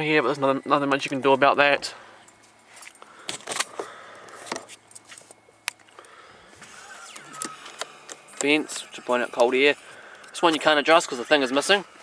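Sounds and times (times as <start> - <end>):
faint steady hum: 0.0 - 12.0
light clicks and rustles: 2.2 - 8.8.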